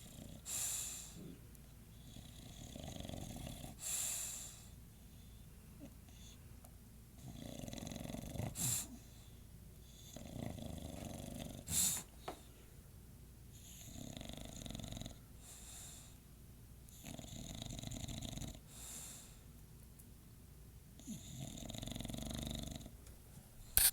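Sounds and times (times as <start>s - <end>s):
dog snoring: 0.0s - 4.7s, 7.2s - 9.2s, 9.8s - 12.1s, 13.6s - 16.1s, 16.9s - 19.3s, 21.0s - 23.0s.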